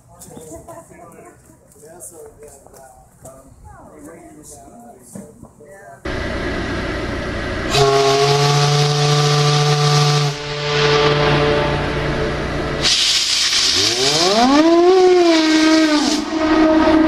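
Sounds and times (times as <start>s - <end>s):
low steady tone: 10.4s - 12.8s
steady hiss: 12.8s - 14.2s.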